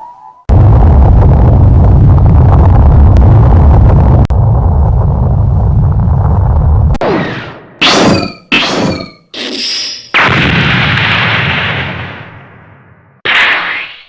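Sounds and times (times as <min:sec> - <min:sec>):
loud low rumble: 0:00.5 - 0:07.0.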